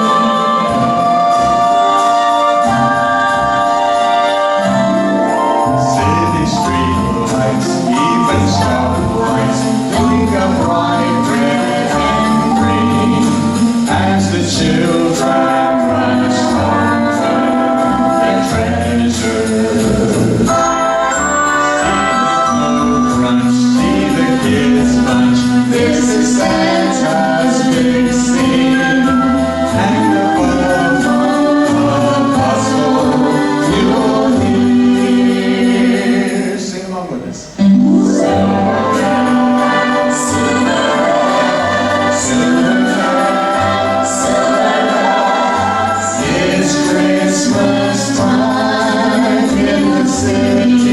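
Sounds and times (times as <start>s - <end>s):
christmas song with singing: 0.0s - 50.9s
person singing: 0.0s - 50.9s
accompaniment with bass line: 4.7s - 35.9s, 37.0s - 50.9s
bass line: 5.5s - 15.0s.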